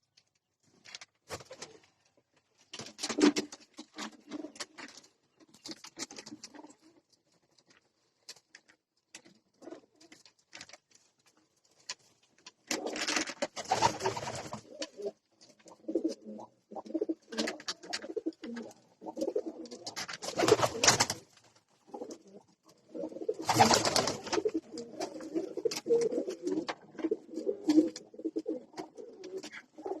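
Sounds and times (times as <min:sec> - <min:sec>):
pigeons cooing: 0:13.7 - 0:21.0, 0:21.9 - 0:30.0.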